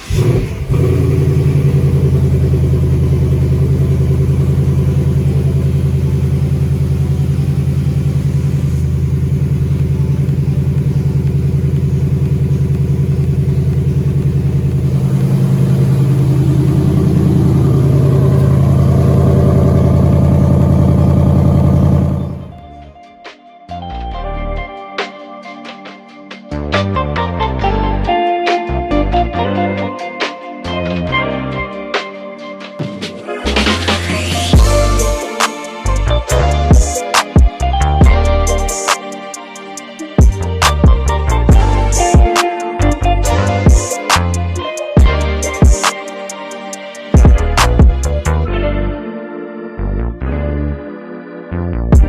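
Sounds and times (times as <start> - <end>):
car engine idling: 0.0 - 22.9.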